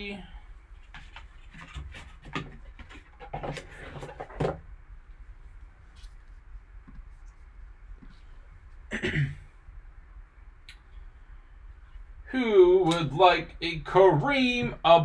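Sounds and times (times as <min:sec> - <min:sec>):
cards and packaging rustling: 0:00.8 - 0:04.6.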